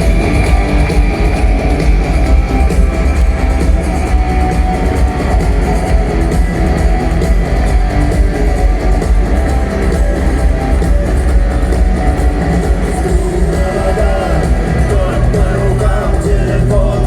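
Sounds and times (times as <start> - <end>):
live rock band playing: 0.0 - 17.0
person singing: 13.1 - 17.0.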